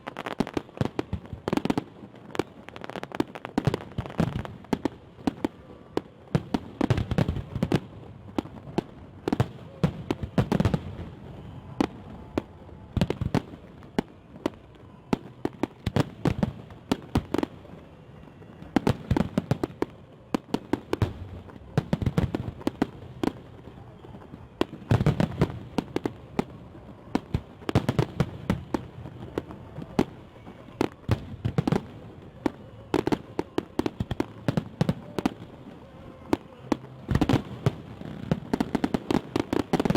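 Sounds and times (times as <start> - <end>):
fireworks bangs and pops: 0.0 - 39.9
fireworks crackling: 0.0 - 39.9.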